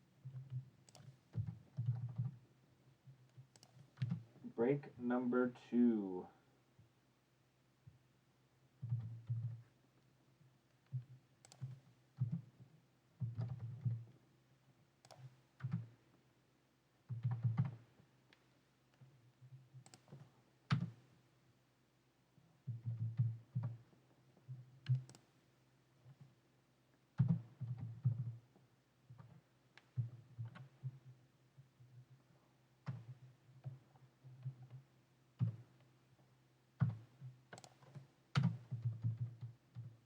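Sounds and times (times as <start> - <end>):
typing on computer keyboard: 0.2 - 2.5, 3.1 - 4.3, 8.8 - 9.6, 10.8 - 12.4, 13.2 - 14.1, 15.0 - 15.9, 19.8 - 21.0, 24.5 - 25.3, 36.8 - 40.0.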